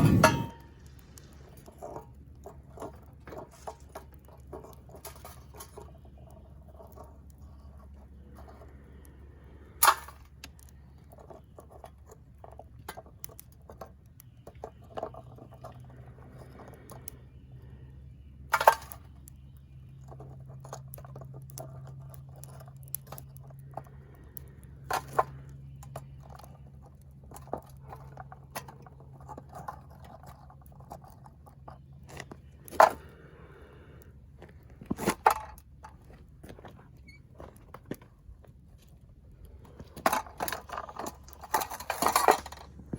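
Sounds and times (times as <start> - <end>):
furnace humming: 0.0 - 1.7.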